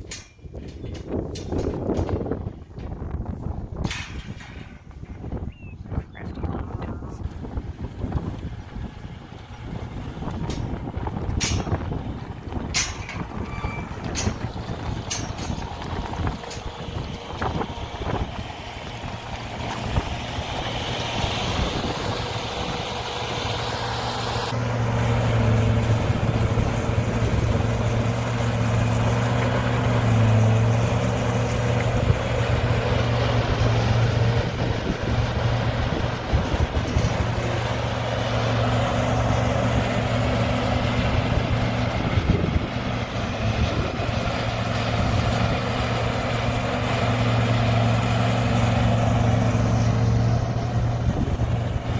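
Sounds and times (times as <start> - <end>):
vehicle engine running: 6.2 - 51.9.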